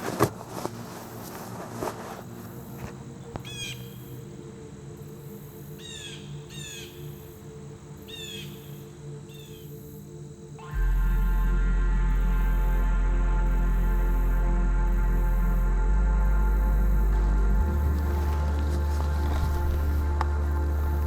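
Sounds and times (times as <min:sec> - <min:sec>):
low steady hum: 0:00.0 - 0:21.0
bird chirping: 0:02.0 - 0:04.3.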